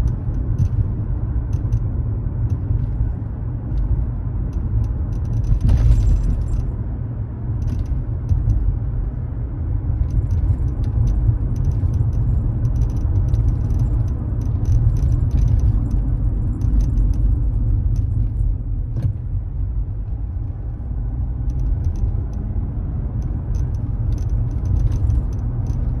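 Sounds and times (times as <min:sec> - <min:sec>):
low road rumble: 0:00.0 - 0:26.0
car interior creaking ticks: 0:23.2 - 0:26.0.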